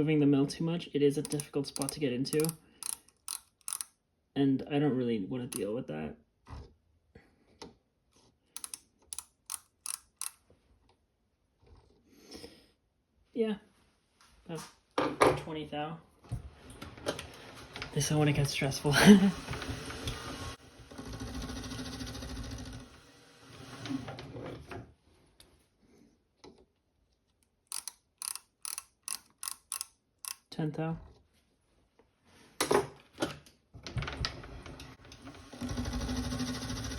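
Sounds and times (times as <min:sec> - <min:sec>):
micrometer ratchet clicking: 0:01.2 - 0:03.9, 0:08.6 - 0:10.4, 0:27.7 - 0:30.4
milling machine gearing running: 0:35.5 - 0:36.9.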